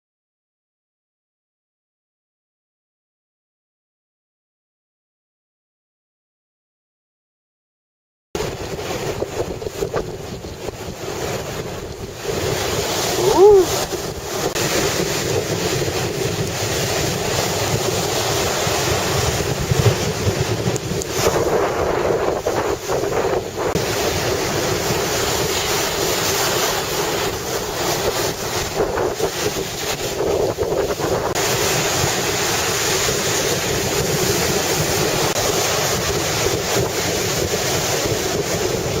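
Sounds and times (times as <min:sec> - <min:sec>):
breaking surf: 0:08.4 - 0:39.0
strong wind buffeting microphone: 0:08.4 - 0:39.0.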